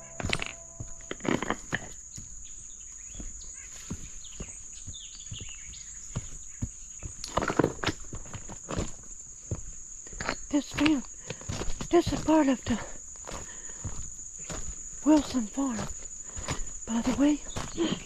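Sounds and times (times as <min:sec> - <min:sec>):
footsteps crunching on gravel: 0:00.0 - 0:18.0
insects buzzing: 0:00.0 - 0:18.0.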